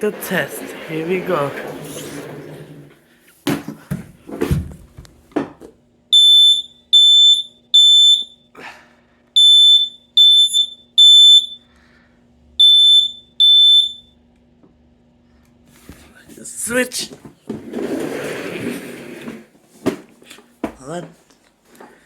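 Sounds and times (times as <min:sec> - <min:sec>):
smoke alarm beeping: 0:06.1 - 0:08.5, 0:09.4 - 0:11.7, 0:12.6 - 0:14.2.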